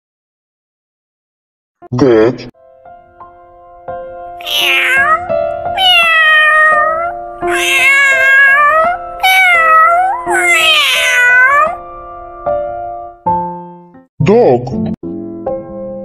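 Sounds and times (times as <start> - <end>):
background music with held notes: 2.6 - 16.0
cat meowing: 4.4 - 11.8.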